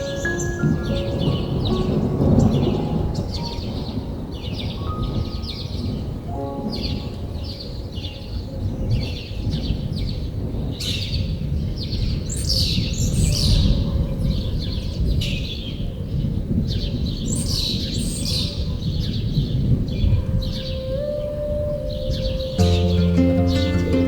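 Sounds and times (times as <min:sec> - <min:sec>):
songbirds chirping and trilling: 0:00.0 - 0:24.0.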